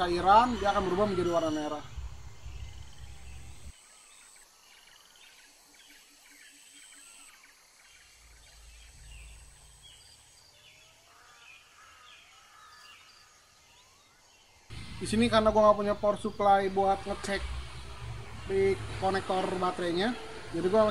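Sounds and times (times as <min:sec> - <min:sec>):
birds chirping and whistling: 0:00.0 - 0:03.7
low rumble: 0:01.8 - 0:03.7.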